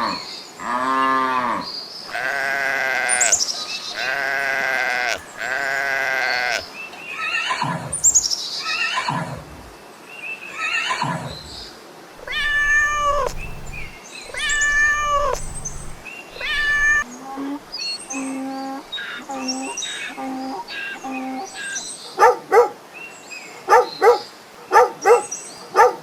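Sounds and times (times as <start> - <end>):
farm animal bleating: 0.6 - 7.7, 12.2 - 17.6.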